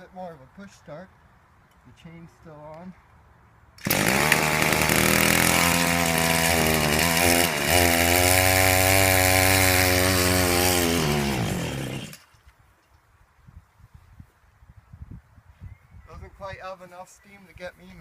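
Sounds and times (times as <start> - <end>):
chainsaw engine revving: 3.8 - 12.2.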